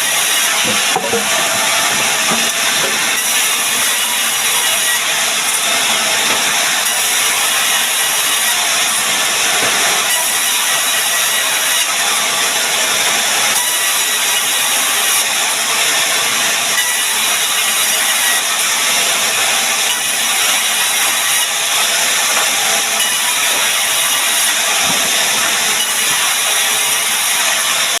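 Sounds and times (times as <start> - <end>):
power woodworking machine running: 0.0 - 28.0.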